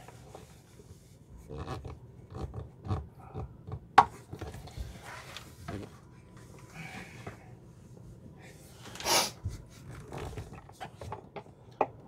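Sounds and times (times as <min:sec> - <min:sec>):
knocks and scrapes on plastic: 0:00.0 - 0:05.9, 0:09.5 - 0:12.0.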